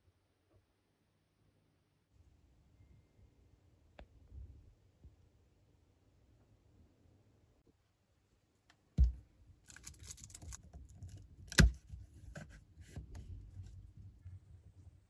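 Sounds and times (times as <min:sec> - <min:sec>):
small clicks and rustles: 0:09.7 - 0:12.5.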